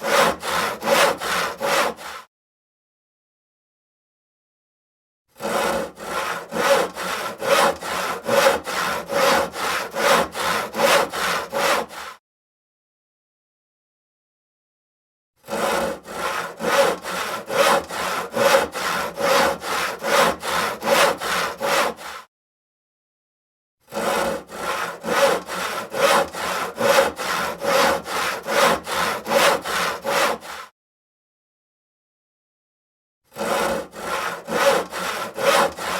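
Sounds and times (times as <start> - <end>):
hand saw cutting wood: 0.0 - 2.3, 5.3 - 12.2, 15.4 - 22.3, 23.8 - 30.7, 33.3 - 35.9.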